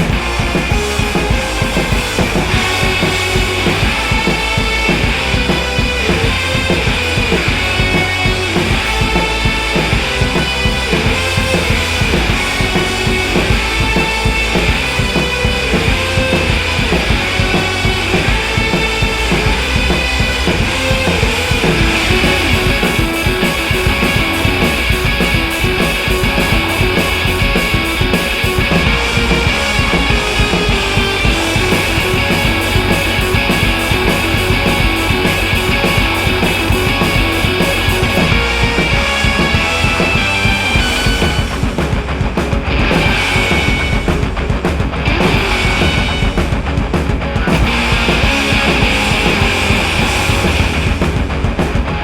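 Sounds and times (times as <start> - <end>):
rock music with drums and guitar: 0.0 - 52.0
fast cymbal pattern: 17.1 - 42.0.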